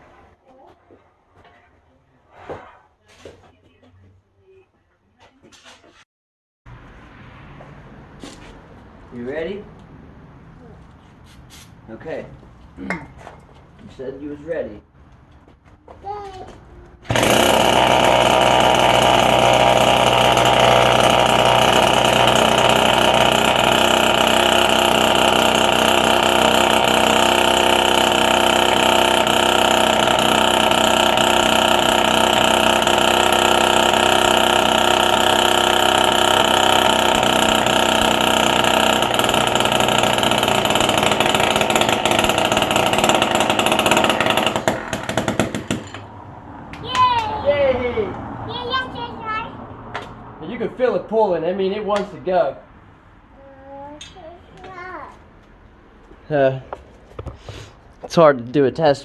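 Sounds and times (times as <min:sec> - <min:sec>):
two-stroke scooter engine running: 0:17.1 - 0:46.0.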